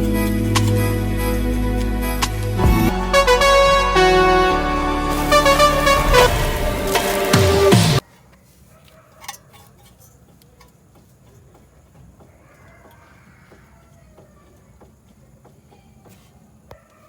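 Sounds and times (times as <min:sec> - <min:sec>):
low hum: 0:00.0 - 0:08.0.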